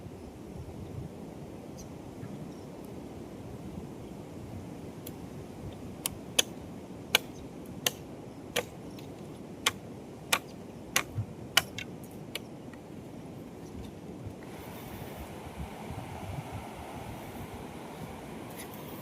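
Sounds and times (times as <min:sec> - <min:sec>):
low rushing background: 0:13.0 - 0:19.0.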